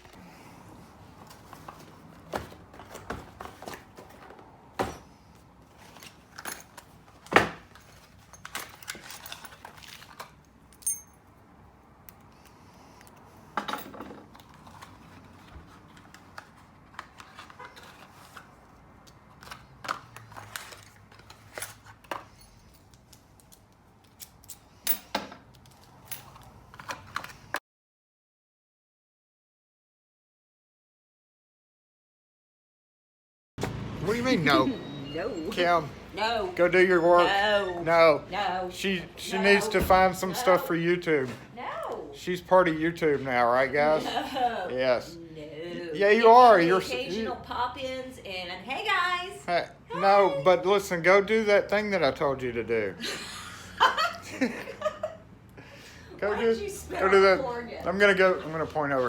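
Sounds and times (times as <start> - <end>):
metal keys clinking and jangling: 6.2 - 11.4, 21.4 - 26.6.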